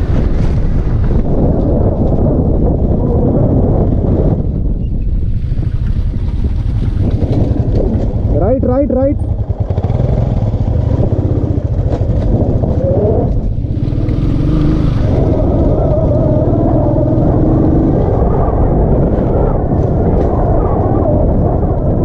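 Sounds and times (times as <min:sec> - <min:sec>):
motorcycle engine rumbling: 0:00.0 - 0:22.0.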